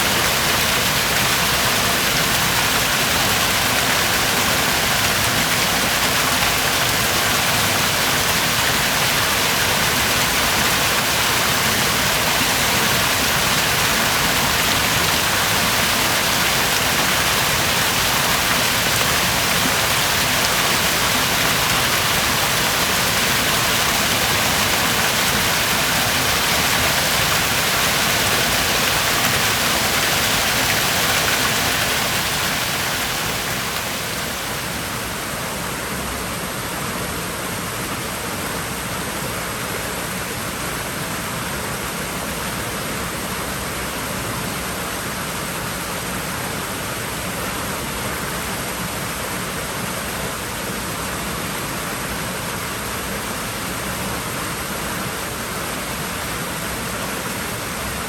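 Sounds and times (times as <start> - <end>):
pool water splashing: 0.0 - 36.1.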